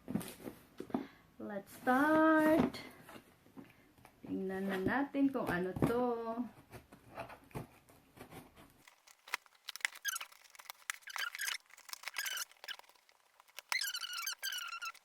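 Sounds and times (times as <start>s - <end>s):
packaging squeaking: 8.8s - 15.0s.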